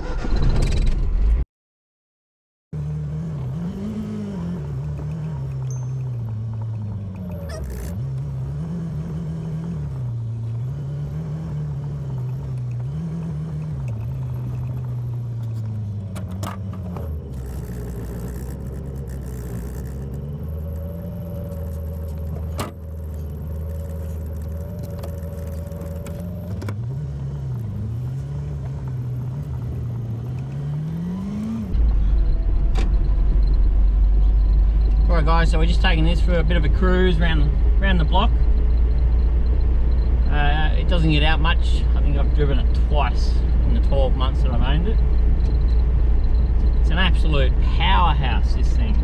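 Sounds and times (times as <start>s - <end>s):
car engine revving: 2.8s - 38.9s.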